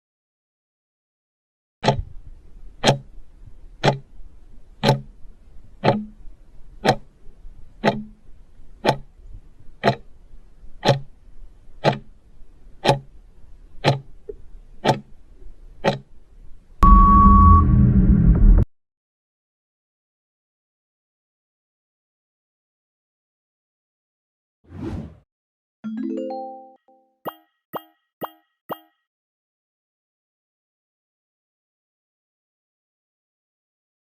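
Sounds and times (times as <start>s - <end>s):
clock ticking: 1.8s - 2.1s, 2.8s - 4.2s, 4.8s - 5.2s, 5.8s - 7.2s, 7.8s - 8.2s, 8.8s - 9.2s, 9.8s - 10.2s, 10.8s - 11.2s, 11.8s - 12.2s, 12.8s - 13.2s, 13.8s - 15.2s, 15.8s - 16.1s, 27.3s - 28.9s
steady beep: 16.8s - 18.0s, 27.3s - 28.9s.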